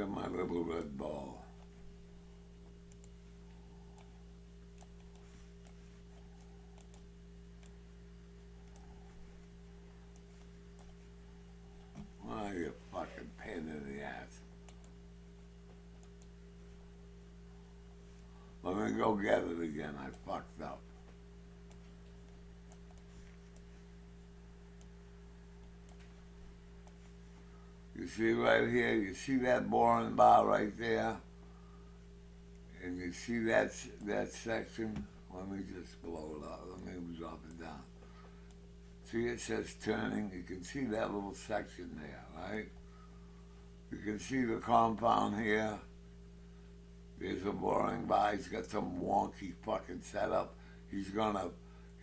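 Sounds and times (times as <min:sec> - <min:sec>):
low electrical hum: 0:00.0 - 0:52.0
computer clicks: 0:02.6 - 0:03.2, 0:03.9 - 0:07.8, 0:08.6 - 0:09.1, 0:10.1 - 0:11.1, 0:14.6 - 0:15.0, 0:15.7 - 0:16.4, 0:21.6 - 0:23.7.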